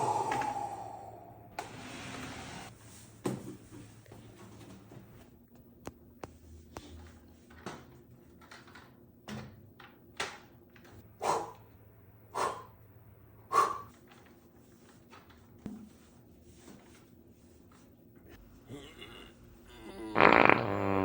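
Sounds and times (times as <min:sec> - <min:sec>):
back cracking: 0:20.2 - 0:21.0.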